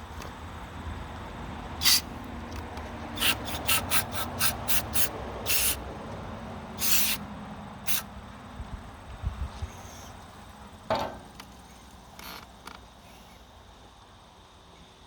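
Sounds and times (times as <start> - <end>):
hissing spurts: 1.8 - 5.9, 6.7 - 8.3.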